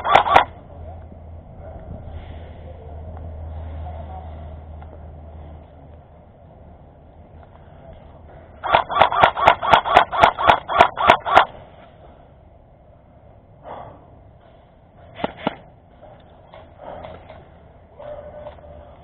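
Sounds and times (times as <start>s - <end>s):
airsoft gun shots: 0.0s - 0.6s, 8.6s - 11.6s, 15.2s - 15.7s.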